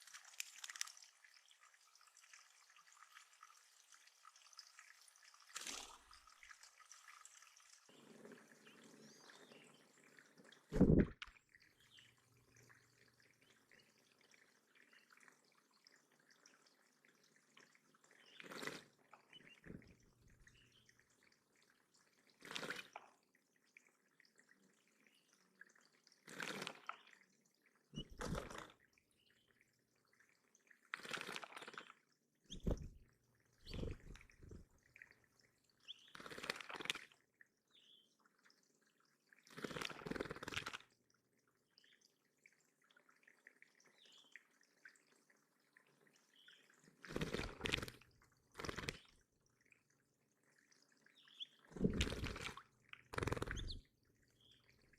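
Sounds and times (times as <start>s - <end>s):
water splashing: 10.4s - 15.6s, 27.9s - 28.9s, 30.1s - 37.2s, 46.0s - 49.8s, 50.4s - 54.9s.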